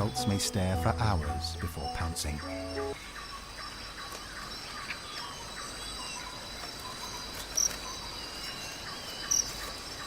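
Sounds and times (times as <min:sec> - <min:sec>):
crickets and insects trilling: 0:00.0 - 0:10.0
short insect chirps: 0:02.4 - 0:10.0.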